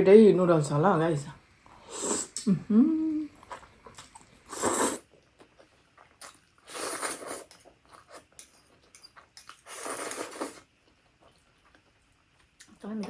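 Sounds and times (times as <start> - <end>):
slurping noodles: 3.4 - 5.1, 6.7 - 7.6.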